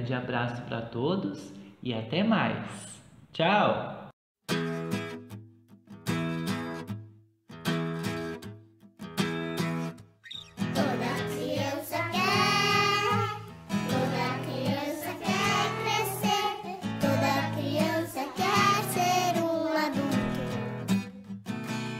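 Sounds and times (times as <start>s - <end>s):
acoustic guitar: 4.5s - 21.9s
person singing: 10.7s - 20.9s.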